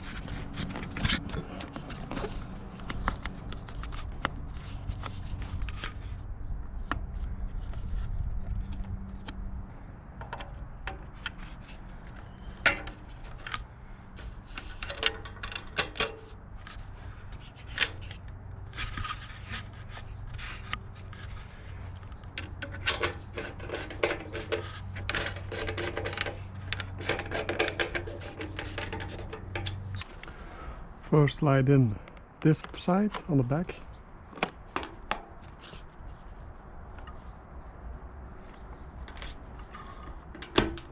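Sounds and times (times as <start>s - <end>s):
rubbing and scraping of parts: 0.0s - 6.3s, 7.1s - 30.6s, 38.4s - 40.9s
sharp clicks and knocks: 21.9s - 30.3s.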